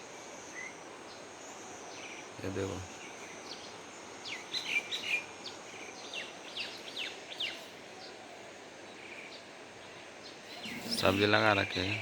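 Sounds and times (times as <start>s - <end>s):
outdoor hiss: 0.0s - 12.0s
small birds chirping: 0.0s - 12.0s.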